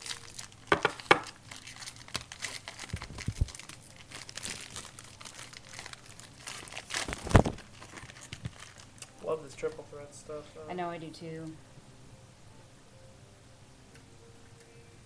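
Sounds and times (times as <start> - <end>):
plastic wrapper crinkling and tearing: 0.0 - 9.9.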